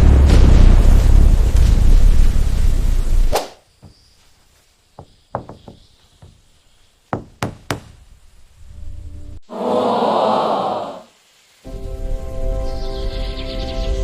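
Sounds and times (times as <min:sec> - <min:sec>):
sharp knocks: 0:05.0 - 0:06.5, 0:07.1 - 0:08.0.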